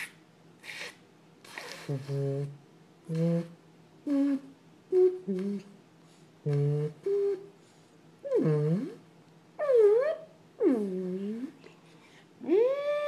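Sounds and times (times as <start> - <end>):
dog whining and groaning: 8.2 - 11.6, 12.4 - 13.0.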